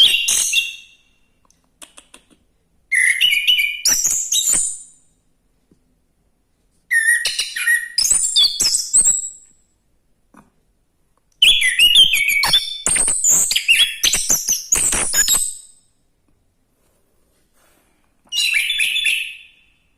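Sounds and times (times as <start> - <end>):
thrush singing whistled phrases: 2.9 - 4.9, 6.9 - 9.4, 11.4 - 15.8, 18.3 - 19.8.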